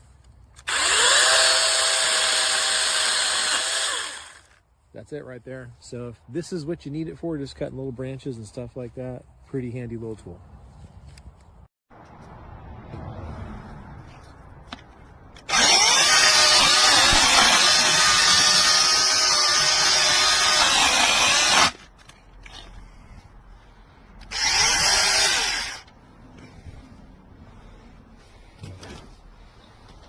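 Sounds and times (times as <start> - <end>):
cordless chainsaw running: 0.6 - 4.6, 15.5 - 21.8, 24.3 - 25.9.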